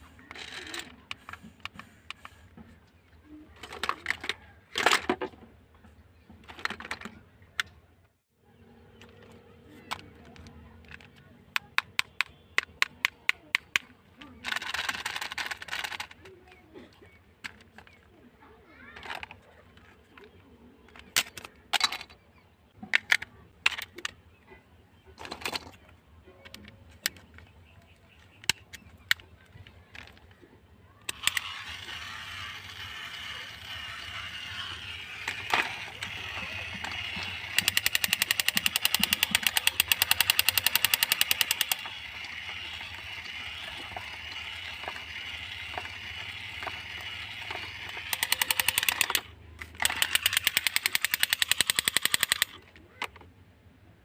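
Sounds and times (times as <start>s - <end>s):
toy motor whirring: 0.0s - 2.6s, 3.4s - 5.2s, 9.2s - 16.6s, 17.4s - 18.1s, 18.7s - 20.2s, 28.2s - 53.2s
handling clicks and knocks: 8.9s - 18.2s, 22.8s - 31.4s, 35.1s - 53.4s
rapid mechanical clattering: 31.0s - 52.6s.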